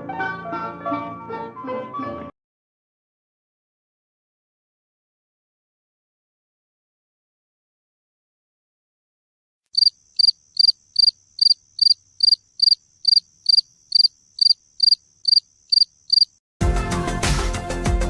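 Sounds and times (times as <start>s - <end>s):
music: 0.0s - 2.4s, 16.6s - 18.0s
cricket chirping ringtone: 9.8s - 16.3s.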